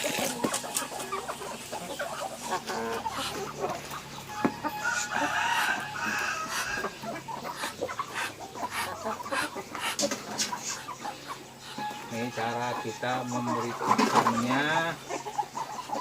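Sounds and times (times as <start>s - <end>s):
chickens clucking: 0.0s - 16.0s
rooster crowing: 4.3s - 7.0s.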